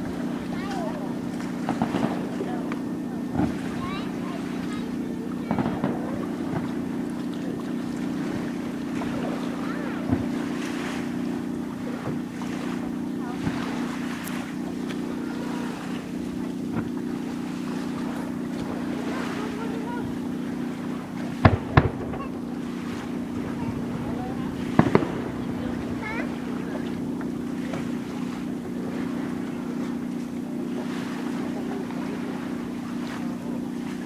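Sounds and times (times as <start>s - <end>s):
firework bangs: 0.0s - 13.9s, 18.2s - 31.2s
steady low hum: 0.0s - 34.0s.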